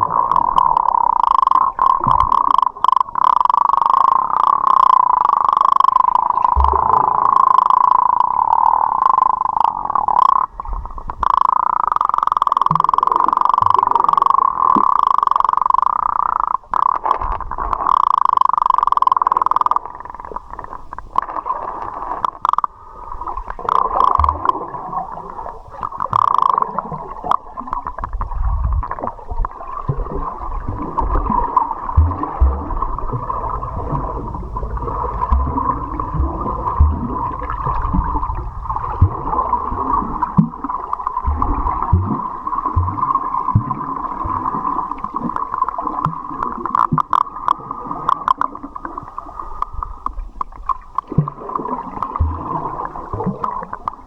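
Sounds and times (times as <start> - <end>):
low thumps: 30.6 - 43.7.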